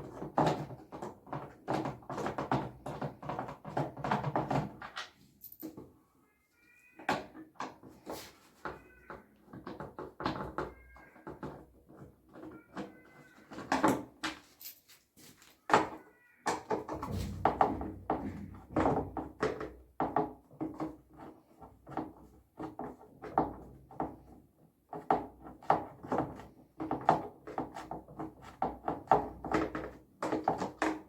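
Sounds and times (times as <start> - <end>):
hard parts knocking and clattering: 0.0 - 5.9, 15.6 - 24.3.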